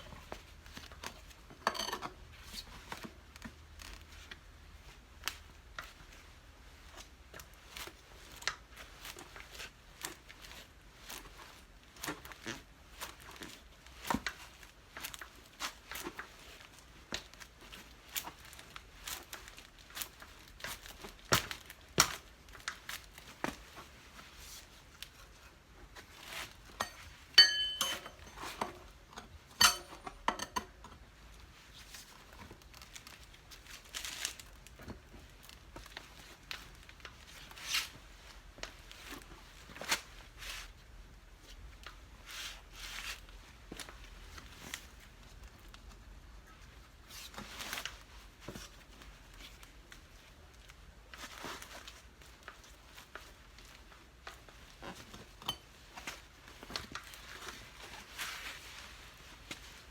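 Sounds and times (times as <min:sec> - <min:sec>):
metal tool striking and ringing: 0:26.8 - 0:28.3, 0:29.6 - 0:30.6
sharp metal clank: 0:26.8 - 0:28.4, 0:29.6 - 0:30.6
tools clicking and tapping: 0:26.8 - 0:31.0.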